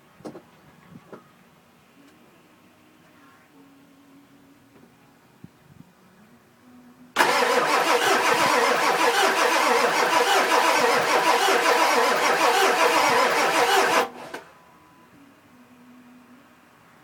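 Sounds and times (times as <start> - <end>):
diesel engine starter cranking: 7.2 - 14.5.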